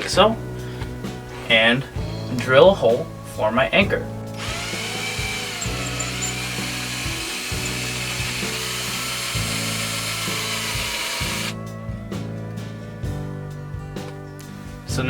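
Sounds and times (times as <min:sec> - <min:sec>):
background music: 0:00.0 - 0:15.0
power drill boring into wall: 0:04.4 - 0:11.6.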